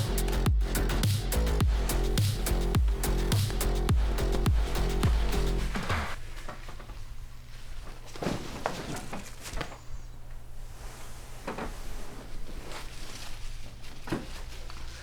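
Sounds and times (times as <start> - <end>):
steady low hum: 0.0 - 8.2.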